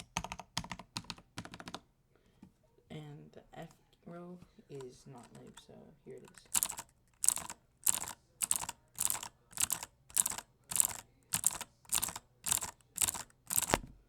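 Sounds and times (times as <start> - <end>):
mechanical keyboard key clicks: 6.3 - 13.9.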